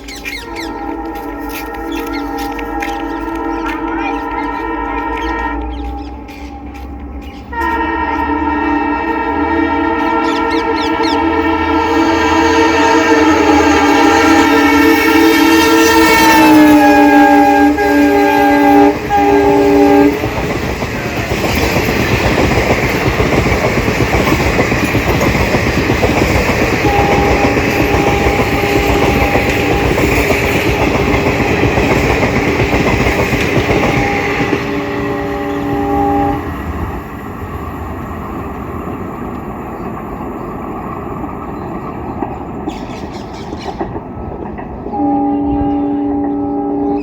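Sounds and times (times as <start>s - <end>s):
wheels clacking on rail joints: 0.0s - 8.3s, 18.0s - 36.3s, 38.9s - 45.4s
train horn: 0.0s - 37.4s, 44.8s - 47.0s.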